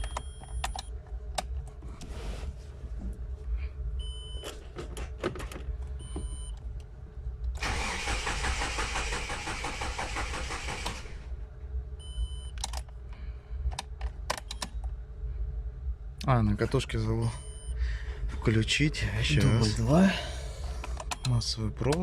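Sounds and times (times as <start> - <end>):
starter motor cranking: 7.6 - 11.3.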